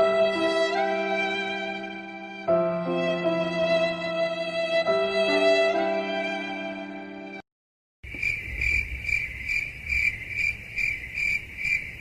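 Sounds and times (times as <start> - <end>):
violin music: 0.0 - 7.4
cricket chirping: 8.1 - 12.0.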